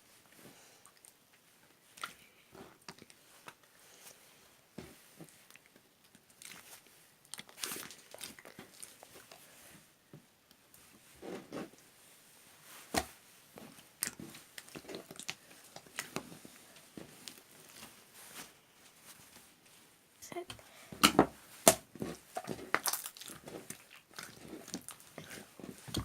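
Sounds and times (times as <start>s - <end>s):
small crunching and clicking: 14.0s - 16.3s, 22.4s - 26.0s.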